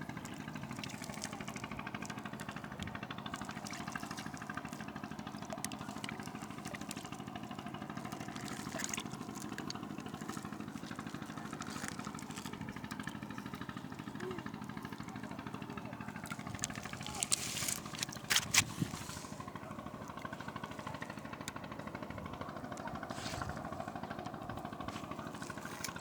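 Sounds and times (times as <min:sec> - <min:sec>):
small engine running: 0:00.0 - 0:26.0.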